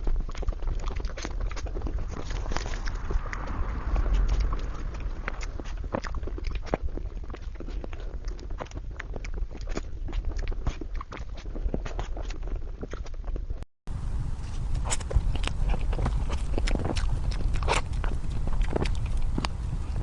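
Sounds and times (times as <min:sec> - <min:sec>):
person chewing and biting cake: 0:00.0 - 0:20.0
mouth clicks: 0:14.7 - 0:20.0.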